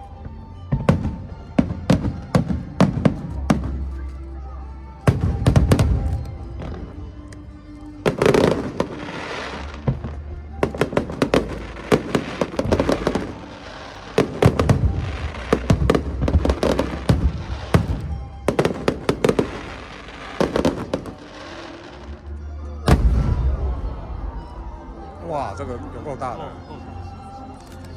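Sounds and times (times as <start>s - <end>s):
fireworks bursting with crackling: 5.1s - 7.0s, 8.0s - 22.2s.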